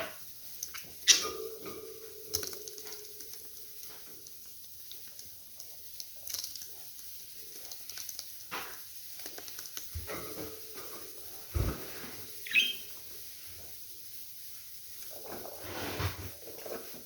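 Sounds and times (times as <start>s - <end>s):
budgies scratching and clicking: 0.5s - 11.8s, 12.4s - 13.0s.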